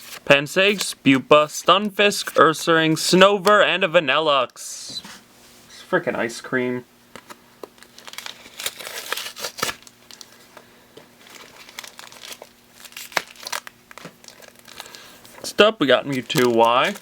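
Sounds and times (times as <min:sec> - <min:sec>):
foil wrapper crinkling and tearing: 0:07.8 - 0:10.4, 0:11.2 - 0:17.0.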